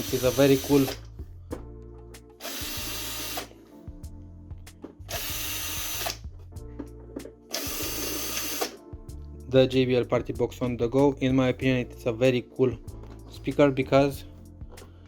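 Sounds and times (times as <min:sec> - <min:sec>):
electric screwdriver running: 0:00.0 - 0:01.0, 0:02.4 - 0:03.5, 0:05.1 - 0:06.2, 0:07.5 - 0:08.8.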